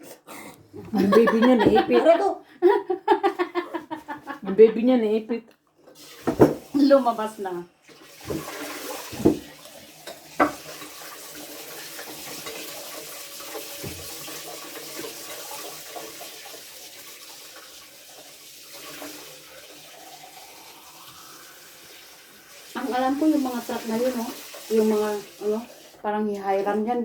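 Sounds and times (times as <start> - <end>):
running water: 5.8 - 27.0.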